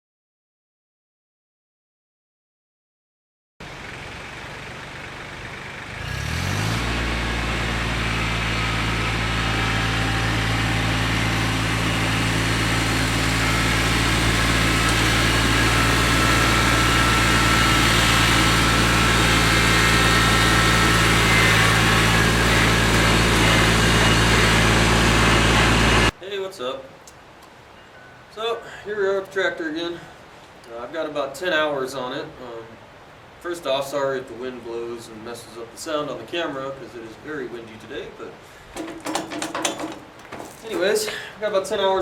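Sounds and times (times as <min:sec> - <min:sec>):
tractor diesel engine running: 0:03.6 - 0:26.1, 0:38.6 - 0:41.3.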